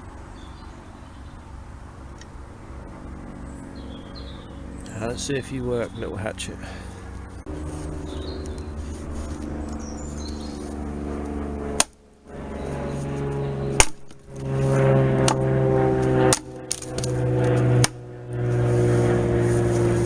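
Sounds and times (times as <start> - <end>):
hatchet chopping wood: 11.8 - 12.0, 13.8 - 14.5, 15.2 - 15.5, 16.1 - 18.0.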